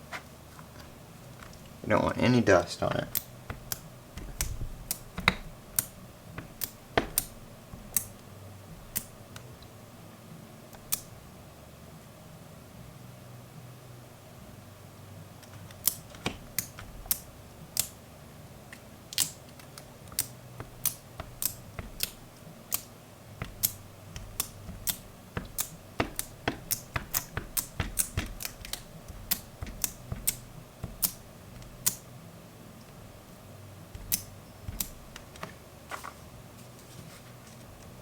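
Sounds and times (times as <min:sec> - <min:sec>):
sharp clicks and taps: 0:03.0 - 0:09.5, 0:15.4 - 0:18.0, 0:19.1 - 0:32.0, 0:33.9 - 0:35.6.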